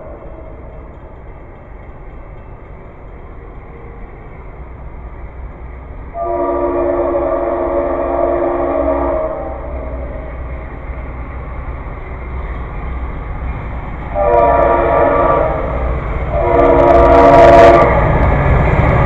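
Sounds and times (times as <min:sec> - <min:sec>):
low rumble of train: 0:00.0 - 0:19.0
locomotive air horn blast: 0:06.2 - 0:10.3, 0:14.2 - 0:18.1.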